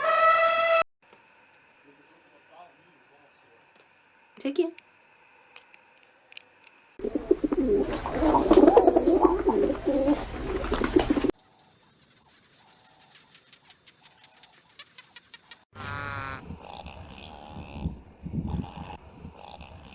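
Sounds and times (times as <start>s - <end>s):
faint hiss: 1.0s - 7.0s
pigeons cooing: 7.0s - 11.3s.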